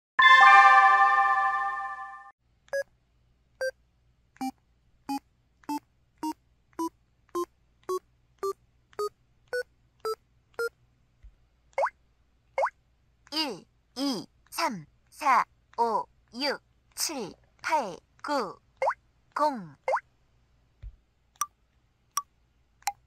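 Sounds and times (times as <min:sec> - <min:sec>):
electronic chime chord: 0:00.2 - 0:02.3.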